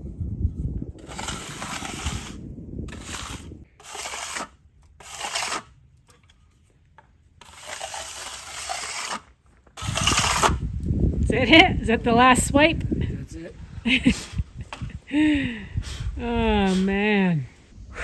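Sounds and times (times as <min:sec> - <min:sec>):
trowel scraping wet concrete: 0:01.0 - 0:10.6
low rumble: 0:10.0 - 0:18.0.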